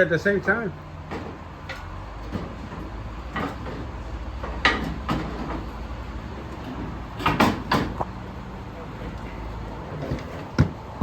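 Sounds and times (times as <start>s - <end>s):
metallic clunks and knocks: 1.0s - 5.8s, 6.5s - 8.1s, 9.9s - 10.8s.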